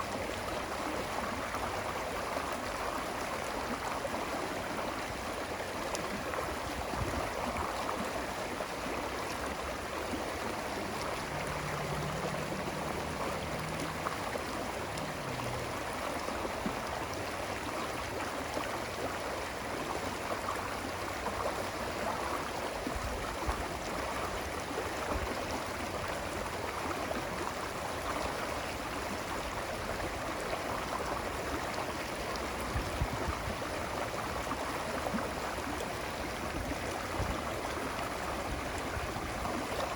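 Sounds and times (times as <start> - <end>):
running water flowing: 0.0 - 39.9.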